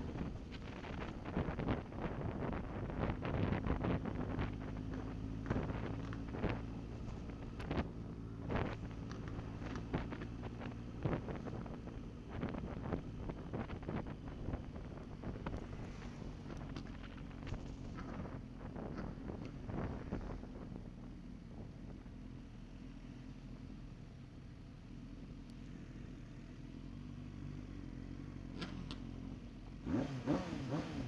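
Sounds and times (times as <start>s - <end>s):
wind buffeting microphone: 0.0s - 20.9s
motorcycle engine cruising: 0.0s - 23.8s, 25.0s - 31.0s.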